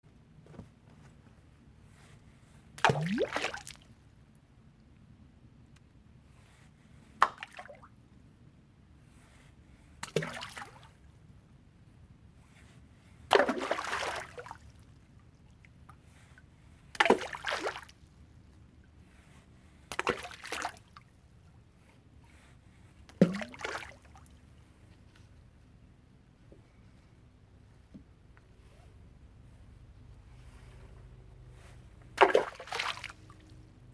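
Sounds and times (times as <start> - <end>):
stones splashing into water: 2.8 - 3.7, 23.2 - 24.0, 32.2 - 33.2.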